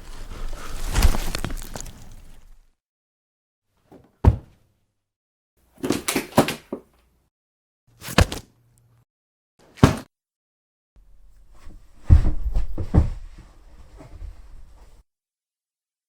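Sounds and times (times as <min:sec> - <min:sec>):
body falling on floor with thud: 0:00.6 - 0:02.5, 0:03.9 - 0:04.6, 0:11.6 - 0:14.5.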